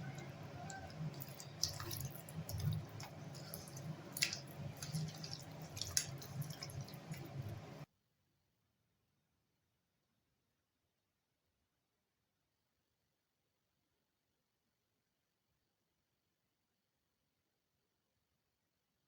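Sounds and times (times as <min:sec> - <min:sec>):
hands squishing wet marinade: 0:00.0 - 0:07.8
low steady hum: 0:00.0 - 0:07.9.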